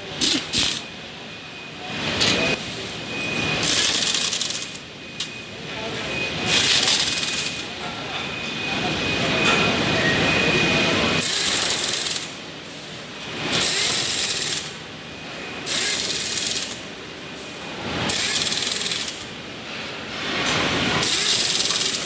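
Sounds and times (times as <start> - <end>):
pneumatic impact wrench hammering: 0.2 - 0.9, 3.6 - 4.8, 15.7 - 16.8, 18.1 - 19.3, 21.0 - 22.0.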